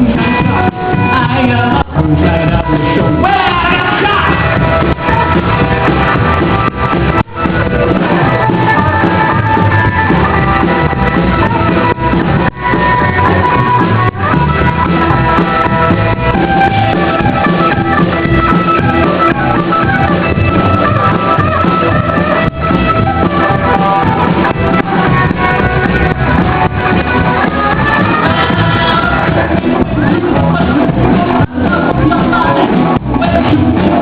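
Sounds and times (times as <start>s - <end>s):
drum kit beat: 0.0s - 34.0s
guitar: 0.0s - 34.0s
rock band instrumental: 0.0s - 34.0s.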